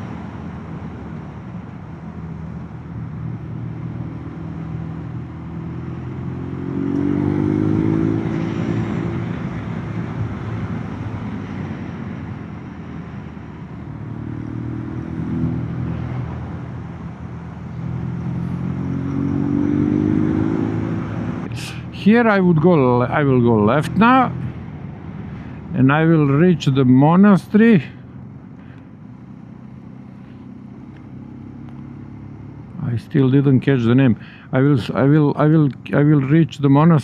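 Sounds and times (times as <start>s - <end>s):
road noise: 0.0s - 37.0s
vehicle engine accelerating: 2.7s - 26.8s, 28.4s - 36.4s.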